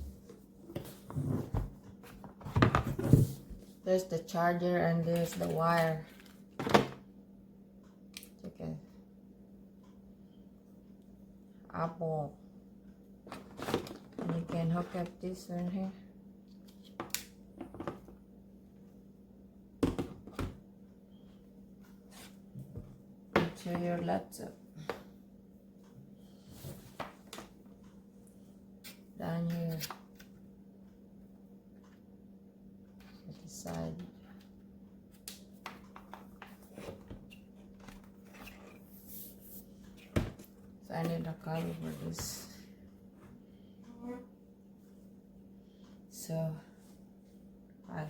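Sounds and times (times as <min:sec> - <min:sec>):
faint steady hum: 0:00.0 - 0:48.0.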